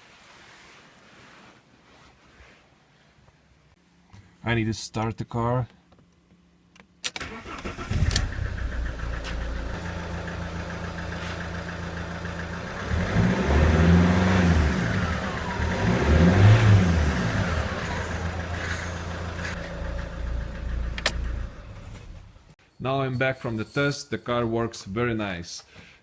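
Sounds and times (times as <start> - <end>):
diesel engine starting and idling: 7.1 - 22.6
engine revving: 7.3 - 22.3.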